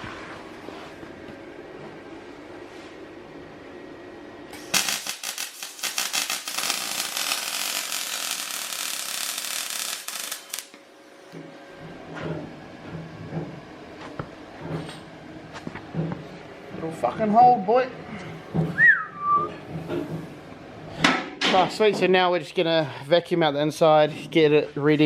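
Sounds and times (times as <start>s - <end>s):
welding arc crackling: 4.5s - 10.8s.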